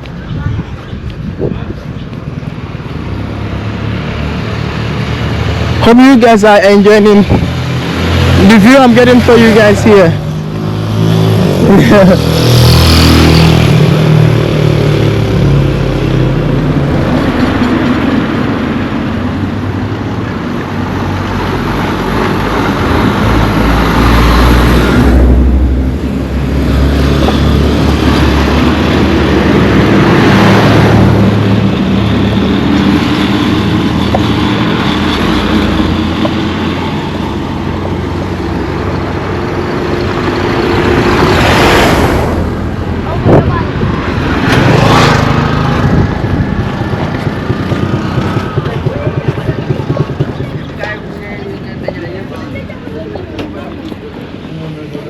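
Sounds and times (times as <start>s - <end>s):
wind noise: 0.0s - 3.2s, 7.1s - 8.4s, 40.1s - 50.3s
road noise: 0.0s - 55.0s
vehicle engine running: 41.9s - 55.0s.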